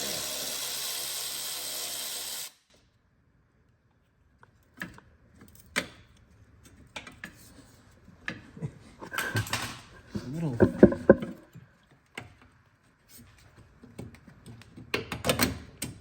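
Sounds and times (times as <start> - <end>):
power tool running: 0.0 - 2.6.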